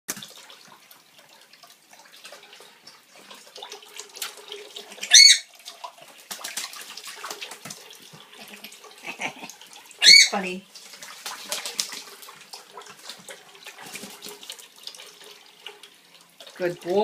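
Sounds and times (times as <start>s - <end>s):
water running and splashing: 0.1s - 17.0s
bird call: 5.1s - 5.5s, 10.0s - 10.4s.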